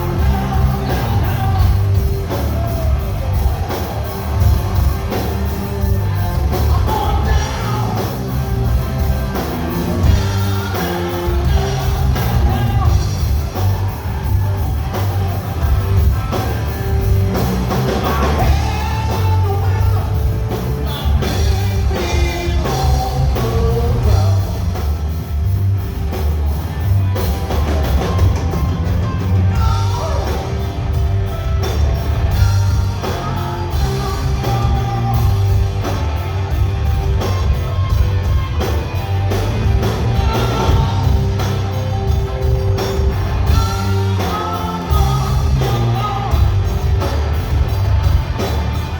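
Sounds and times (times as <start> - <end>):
person singing: 0.0 - 3.0, 6.5 - 8.5, 17.7 - 25.0, 32.3 - 36.0, 43.5 - 47.2
bass guitar: 0.0 - 48.9
drum kit: 0.0 - 48.9.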